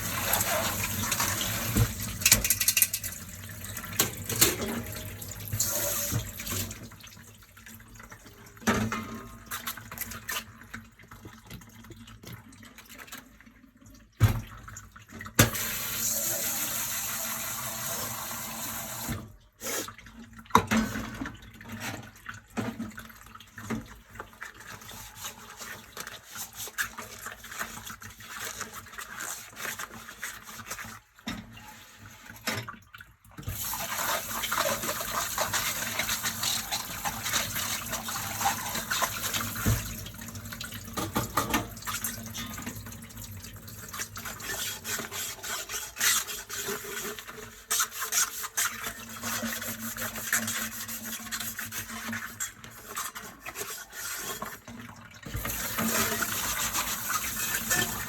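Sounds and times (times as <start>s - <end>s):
tap water running: 0.0s - 58.0s
dishes clinking: 2.2s - 3.3s.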